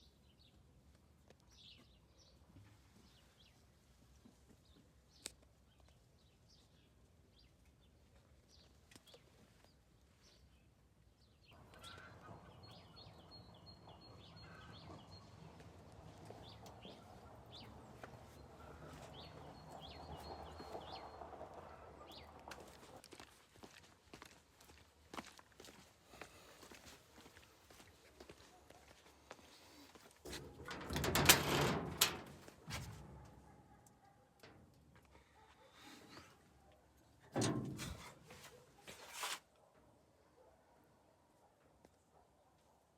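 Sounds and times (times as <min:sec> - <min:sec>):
small birds chirping: 0:04.6 - 0:21.4.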